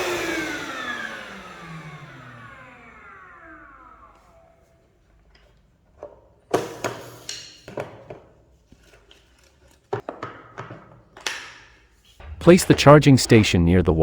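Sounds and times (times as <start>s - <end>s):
plastic parts knocking and clattering: 5.3s - 11.8s.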